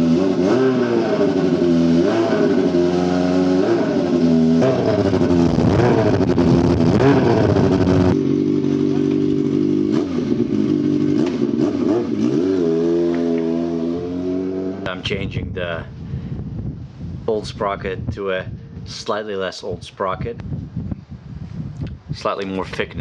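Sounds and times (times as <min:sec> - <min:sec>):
motorcycle engine revving: 0:00.0 - 0:15.3.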